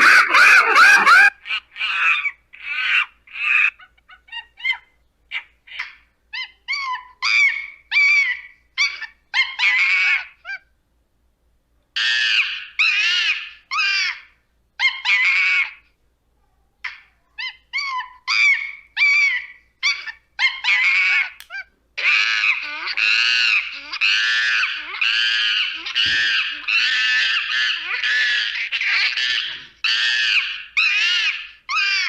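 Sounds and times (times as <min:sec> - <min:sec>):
monkey screaming: 0:00.0 - 0:10.7, 0:12.0 - 0:15.8, 0:16.8 - 0:32.0.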